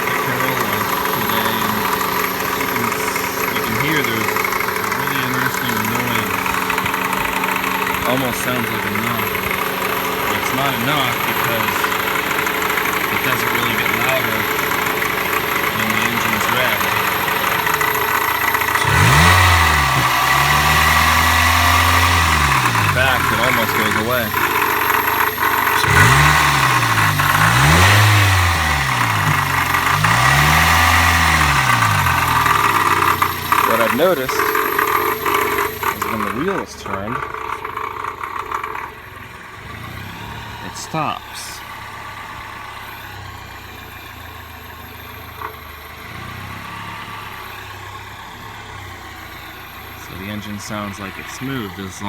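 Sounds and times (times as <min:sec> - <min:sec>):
knocking noise at idle: 0:00.0 - 0:10.6, 0:11.2 - 0:39.9
car engine revving: 0:00.0 - 0:52.0.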